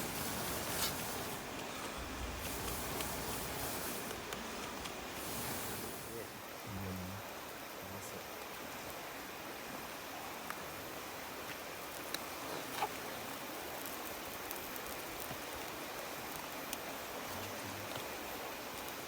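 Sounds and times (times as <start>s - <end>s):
campfire pops: 0.0s - 6.1s, 11.4s - 19.0s.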